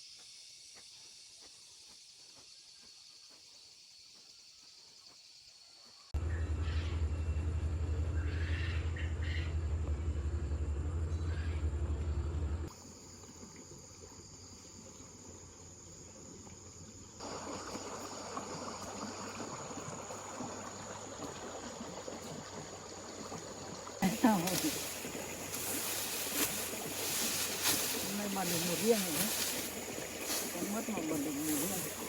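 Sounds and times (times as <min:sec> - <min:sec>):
loud low hum: 0:06.2 - 0:12.7
high insect drone: 0:06.6 - 0:32.0.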